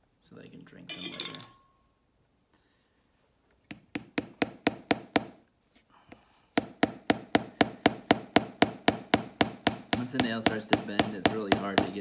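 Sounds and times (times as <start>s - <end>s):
hammer striking a nail: 3.7s - 5.4s, 6.6s - 12.0s.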